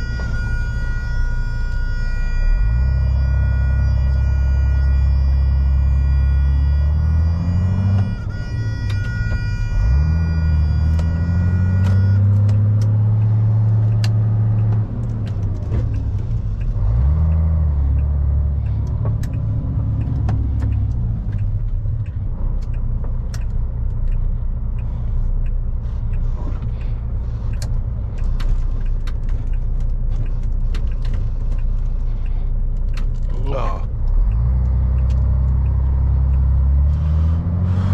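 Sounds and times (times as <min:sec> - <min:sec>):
diesel lorry engine revving: 0:00.0 - 0:37.9
sharp clicks and rattles: 0:12.3 - 0:36.4.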